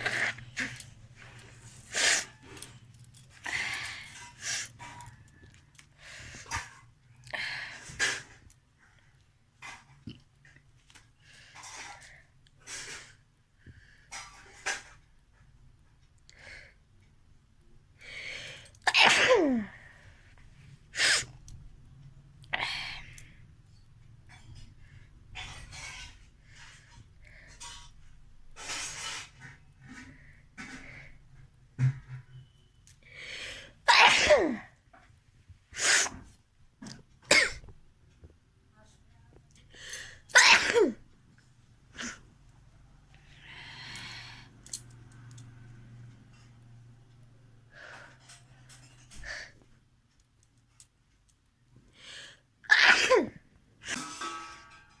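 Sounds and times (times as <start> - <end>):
person sneezing: 18.9 - 19.8, 33.9 - 34.7, 40.3 - 41.0, 52.7 - 53.4.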